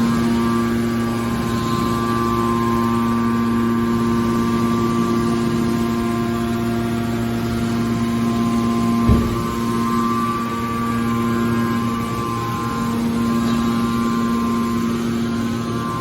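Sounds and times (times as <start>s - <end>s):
hydraulic pump motor humming: 7.1s - 11.4s.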